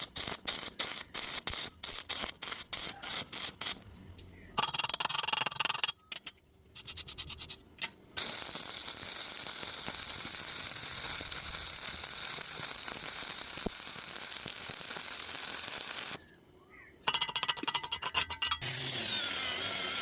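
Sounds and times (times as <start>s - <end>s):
welding arc crackling sizzle: 0.0s - 3.8s, 8.2s - 16.3s, 18.6s - 20.0s.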